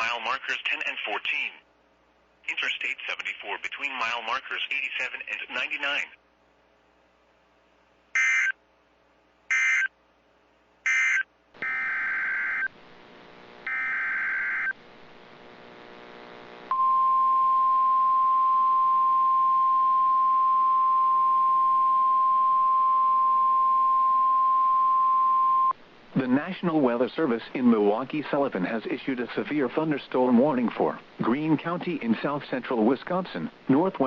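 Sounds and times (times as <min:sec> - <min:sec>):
steady warning alarm tone: 0:08.2 - 0:08.5, 0:09.5 - 0:09.9, 0:10.9 - 0:12.7, 0:13.6 - 0:14.8.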